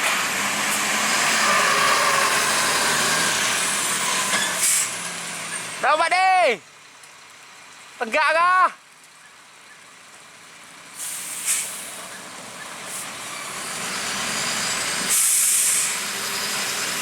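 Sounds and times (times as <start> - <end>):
road and engine noise: 0.0 - 17.0
air brakes hissing: 3.6 - 5.6, 11.0 - 12.2, 12.9 - 16.8.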